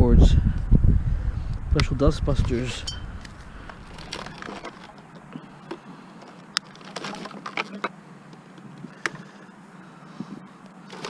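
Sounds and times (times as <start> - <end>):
steady low hum: 0.0 - 6.6
clicks and knocks of handled cords: 3.2 - 9.2.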